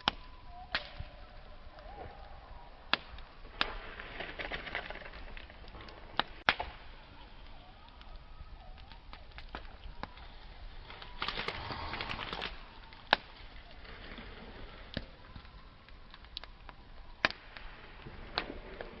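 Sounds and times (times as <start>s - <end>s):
thin wavering whistle: 0.0s - 2.9s, 7.0s - 13.8s
campfire crackling: 0.0s - 19.0s
faint hiss: 5.2s - 19.0s.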